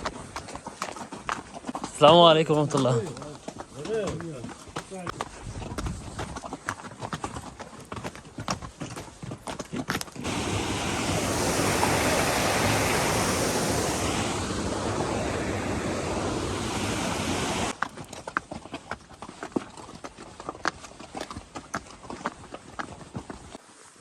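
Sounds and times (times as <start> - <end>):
mule hooves clopping on rocks: 0.0 - 10.3, 17.7 - 23.6
loud steady rushing noise: 10.2 - 17.7.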